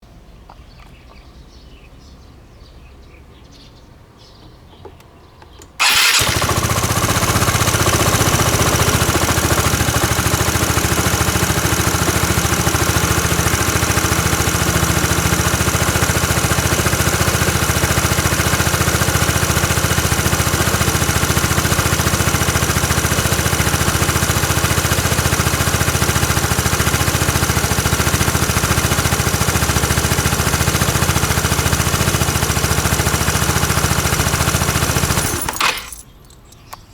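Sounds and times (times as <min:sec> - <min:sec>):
scooter engine starting and idling: 0:04.4 - 0:36.9.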